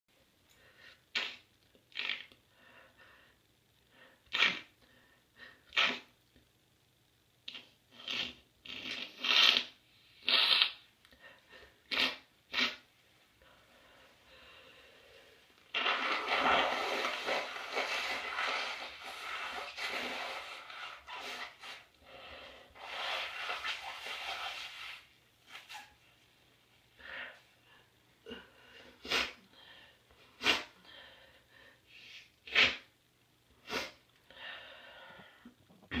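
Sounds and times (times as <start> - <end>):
person blowing nose: 1.1 - 2.3, 4.3 - 4.7, 5.7 - 6.1, 7.5 - 10.8, 11.8 - 12.9, 15.7 - 21.9, 22.7 - 26.0, 29.0 - 29.4, 30.4 - 30.8, 31.9 - 32.9, 33.6 - 34.0.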